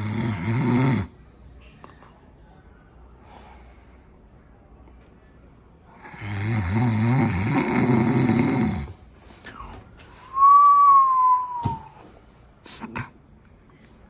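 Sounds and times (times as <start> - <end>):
person snoring: 0.0 - 1.2, 6.0 - 9.0.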